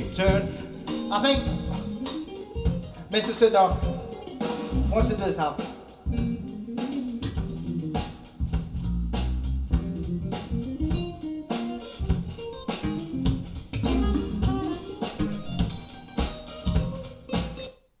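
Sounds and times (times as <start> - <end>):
bass: 0.0 - 3.1, 4.7 - 5.4, 6.1 - 6.6, 7.2 - 17.6
plucked guitar: 0.0 - 5.0, 10.1 - 17.8
drum kit steady beat: 0.0 - 17.8.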